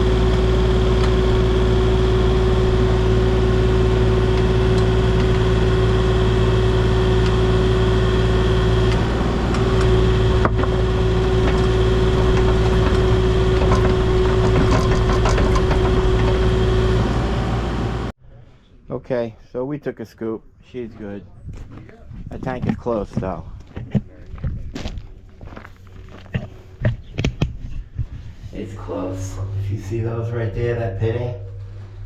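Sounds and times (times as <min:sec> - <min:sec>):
engine running with a whine: 0:00.0 - 0:18.2, 0:25.0 - 0:32.0.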